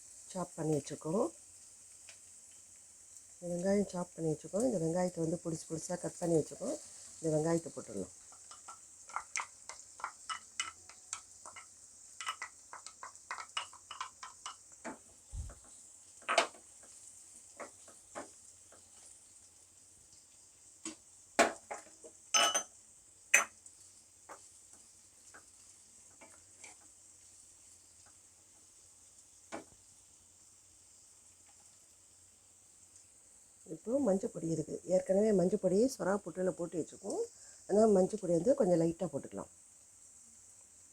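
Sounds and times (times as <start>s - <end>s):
onions sizzling in oil: 0.0s - 40.9s
spoon scraping a pan: 8.2s - 19.2s, 24.3s - 26.9s
knocks on a pan: 16.2s - 16.6s, 20.8s - 22.5s.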